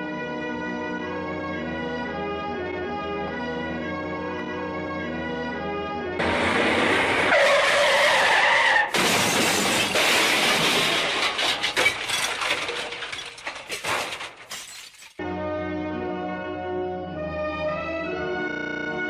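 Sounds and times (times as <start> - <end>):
loud vehicle crash: 6.2 - 15.2
tyre skid squeal: 7.3 - 9.0
debris clattering: 8.9 - 15.2
glass shattering: 8.9 - 15.2.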